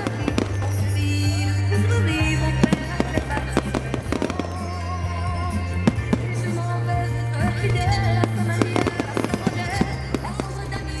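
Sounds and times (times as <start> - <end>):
fireworks bangs and crackles: 0.0 - 1.5, 2.6 - 4.8, 5.4 - 6.6, 7.6 - 11.0
loud music with bass line: 0.0 - 11.0.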